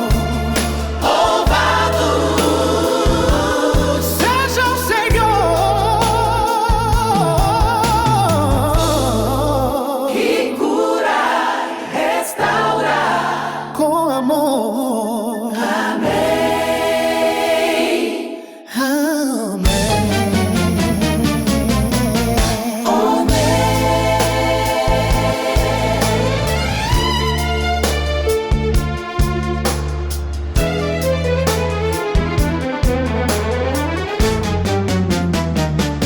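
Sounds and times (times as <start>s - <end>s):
band playing a steady beat: 0.0s - 9.4s, 19.7s - 36.0s
bass accompaniment: 0.0s - 9.8s, 19.7s - 36.0s
choir singing: 0.0s - 18.8s, 19.6s - 27.8s.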